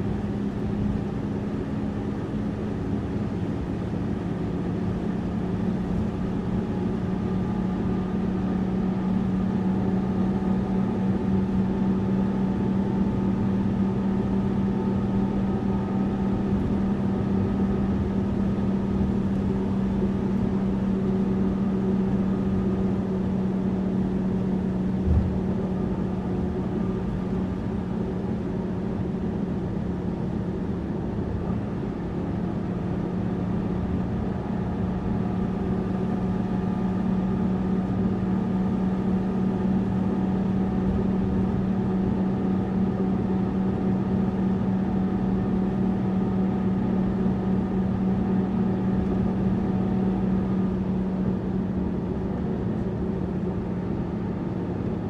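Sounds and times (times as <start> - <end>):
bus engine droning: 0.0 - 55.0
brief knock: 25.0 - 25.4.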